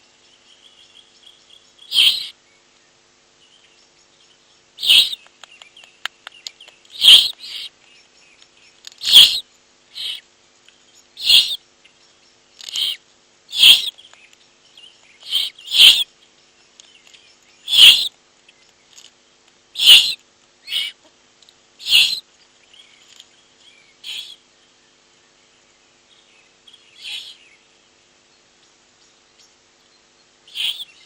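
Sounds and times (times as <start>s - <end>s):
owlets hissing begging calls: 1.9s - 2.4s, 4.8s - 5.2s, 6.9s - 7.8s, 9.0s - 10.3s, 11.2s - 11.6s, 12.7s - 14.0s, 15.2s - 16.1s, 17.7s - 18.1s, 19.8s - 21.0s, 21.8s - 22.2s, 24.0s - 24.4s, 30.5s - 30.9s.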